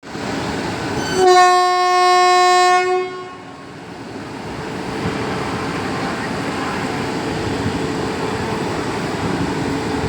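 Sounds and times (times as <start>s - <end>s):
train horn blast: 1.0s - 3.7s.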